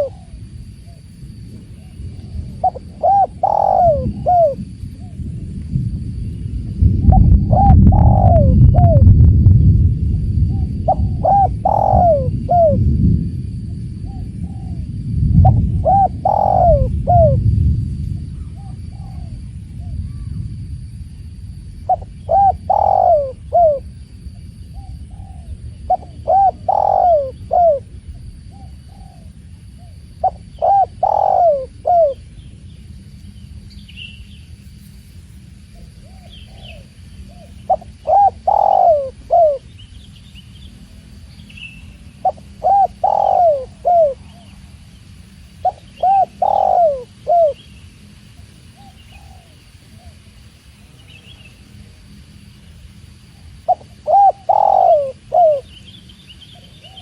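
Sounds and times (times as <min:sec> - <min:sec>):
dove cooing: 0:00.0 - 0:05.3, 0:07.0 - 0:09.2, 0:10.5 - 0:13.0, 0:14.0 - 0:17.5, 0:18.2 - 0:20.4, 0:21.9 - 0:24.0, 0:24.7 - 0:32.3, 0:35.7 - 0:39.8, 0:42.2 - 0:44.8, 0:45.5 - 0:47.7, 0:48.4 - 0:50.3, 0:53.3 - 0:55.9, 0:56.5 - 0:57.0
small birds chirping: 0:24.7 - 0:57.0.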